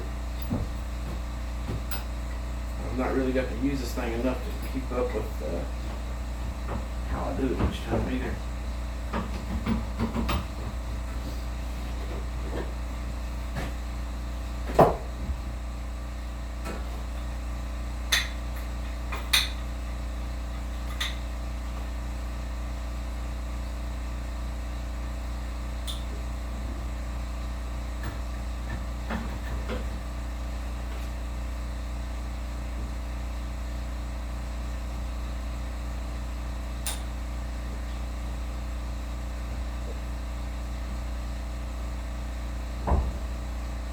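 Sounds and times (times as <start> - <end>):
low machine hum: 0.0 - 43.9.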